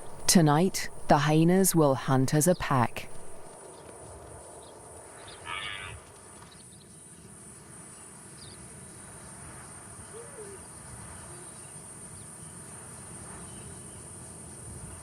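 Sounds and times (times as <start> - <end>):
insects trilling: 0.0 - 3.6.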